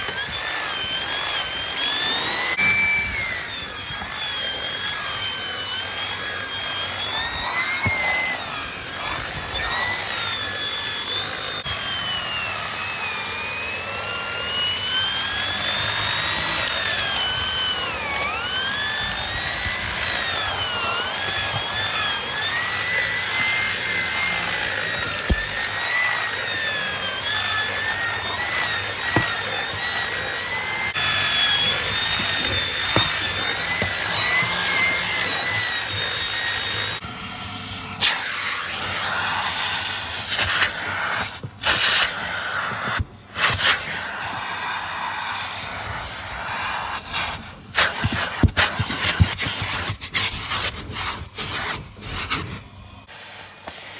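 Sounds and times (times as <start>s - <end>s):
vacuum cleaner whistle: 0.0s - 53.9s
nozzle scraping upholstery: 27.8s - 36.1s.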